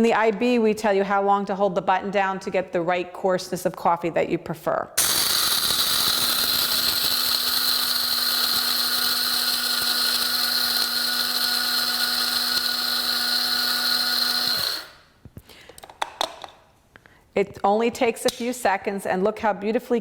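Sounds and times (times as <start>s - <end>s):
coffee grinder grinding beans: 5.0s - 15.1s.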